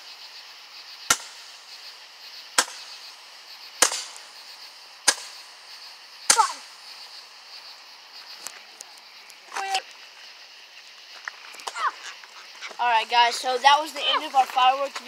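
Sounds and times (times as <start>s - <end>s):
faint firework crackles: 0.7s - 12.7s
firework bangs: 1.1s - 1.8s, 2.5s - 3.2s, 3.8s - 4.4s, 5.0s - 5.5s.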